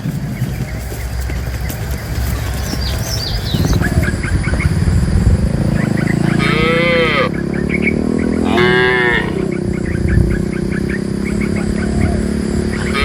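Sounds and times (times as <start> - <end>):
cattle mooing: 6.1 - 7.4, 8.3 - 9.5, 12.7 - 13.0.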